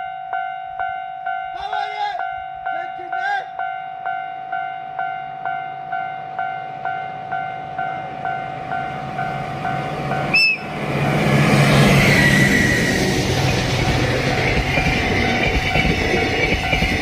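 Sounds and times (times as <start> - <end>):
level-crossing alarm bell ringing: 0.0 - 17.0
locomotive rumble: 6.6 - 17.0
locomotive whistle toot: 10.3 - 10.8.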